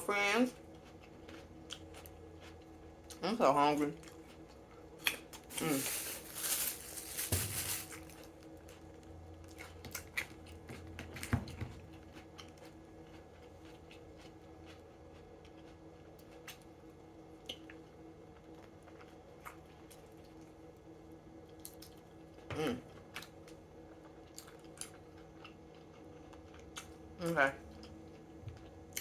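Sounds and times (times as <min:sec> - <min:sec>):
person chewing: 0:00.7 - 0:03.2, 0:04.0 - 0:16.7, 0:24.2 - 0:27.0
handling noise: 0:05.6 - 0:08.0.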